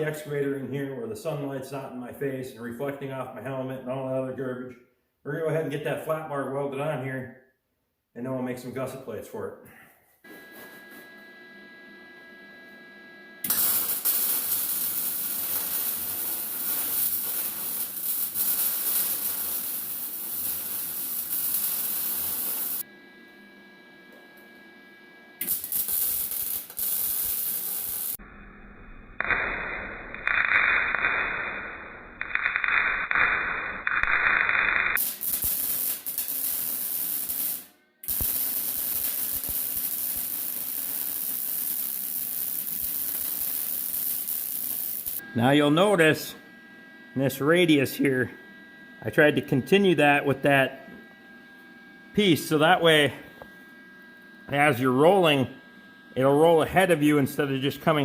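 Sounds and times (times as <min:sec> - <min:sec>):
arc welding crackling and hissing: 0:13.4 - 0:22.9, 0:25.4 - 0:28.2, 0:29.2 - 0:46.3, 0:52.2 - 0:53.5, 0:54.5 - 0:55.5, 0:56.2 - 0:58.0.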